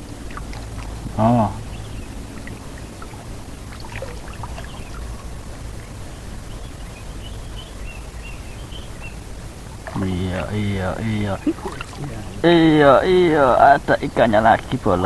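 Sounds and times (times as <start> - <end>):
faint bird chirps: 0.0 - 13.6
steady wind: 0.0 - 15.0
water noise: 0.0 - 15.0.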